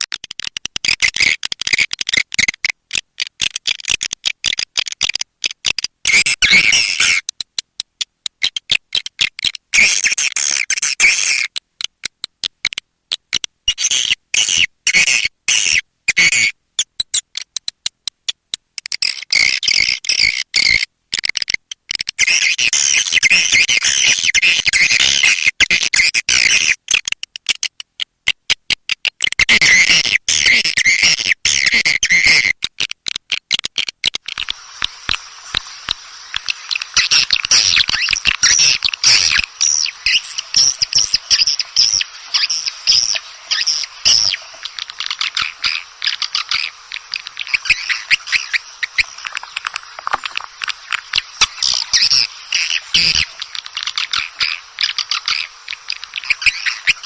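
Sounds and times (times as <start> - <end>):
thin steady sound: 34.0 - 57.0
swiftlet call twittering: 34.2 - 57.0.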